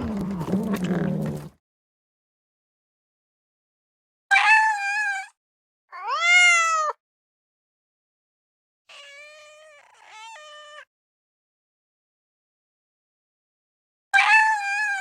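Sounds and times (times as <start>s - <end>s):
cat meowing: 6.0s - 7.0s, 8.9s - 10.9s, 14.2s - 15.0s.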